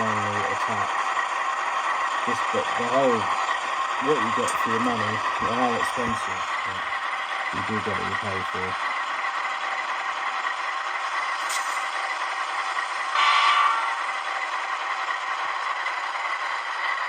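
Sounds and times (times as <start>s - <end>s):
diesel engine hum from small speaker: 0.0s - 17.0s
brief loud pitched sound: 13.2s - 14.1s.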